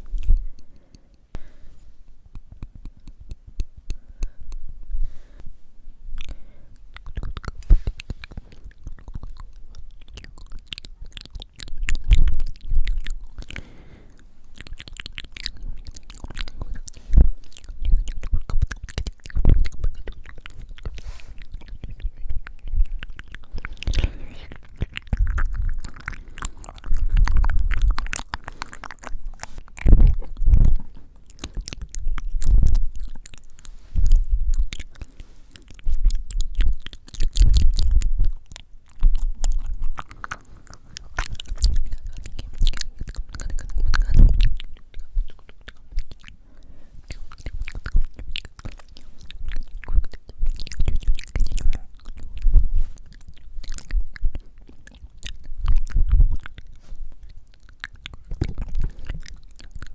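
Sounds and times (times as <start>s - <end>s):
breath hitting microphone: 0.0s - 2.1s, 4.0s - 5.7s, 6.3s - 6.8s, 7.6s - 8.6s, 13.4s - 14.4s, 20.9s - 21.5s, 23.7s - 24.6s, 46.4s - 47.6s
wet lip and tongue clicks: 0.0s - 5.4s, 6.1s - 59.9s.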